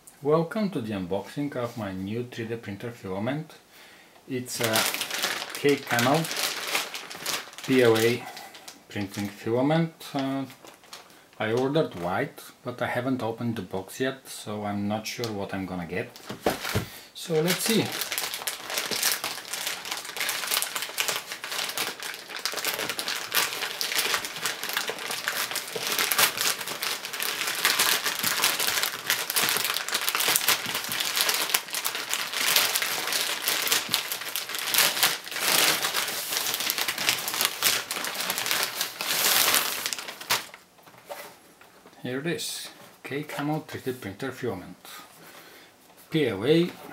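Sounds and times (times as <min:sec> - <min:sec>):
packaging crinkling and rustling: 0:04.5 - 0:12.0, 0:16.1 - 0:41.9.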